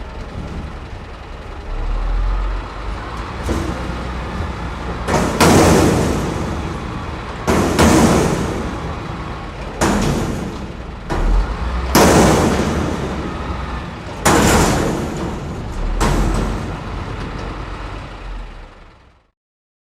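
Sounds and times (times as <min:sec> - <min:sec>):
garbage truck engine rumble: 0:00.0 - 0:19.3
loud crashes: 0:03.2 - 0:17.8.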